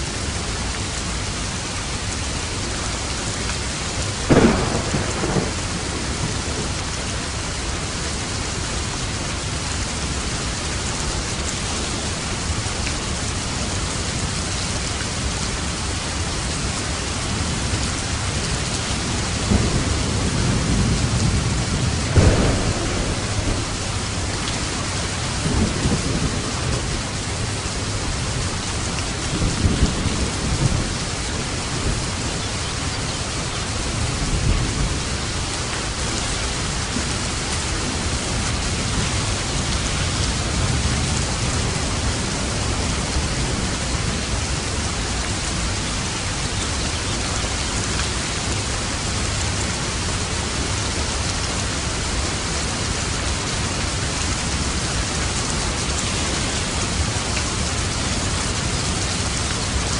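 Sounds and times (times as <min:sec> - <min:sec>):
steady rain: 0:00.0 - 0:59.9
thunder rumbling: 0:04.2 - 0:08.0, 0:17.6 - 0:45.4
sharp thunderclap: 0:04.3 - 0:06.3, 0:19.5 - 0:24.8.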